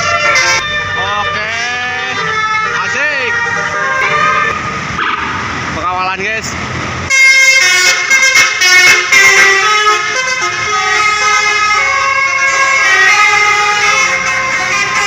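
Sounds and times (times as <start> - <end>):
multi-tone bus horn tune: 0.0 - 5.5, 7.1 - 15.0.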